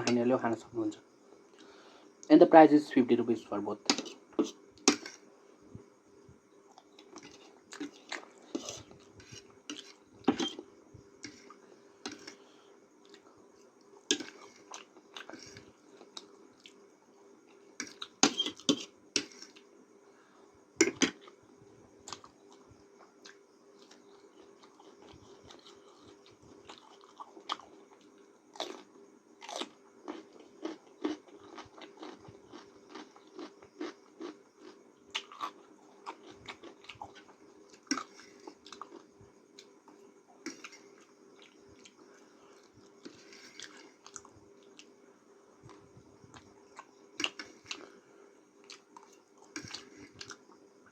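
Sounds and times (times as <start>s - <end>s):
faint steady hum: 0.0s - 50.9s
person chewing noodles: 6.7s - 10.6s, 11.2s - 16.8s, 22.0s - 28.8s, 29.4s - 44.9s, 45.7s - 47.9s.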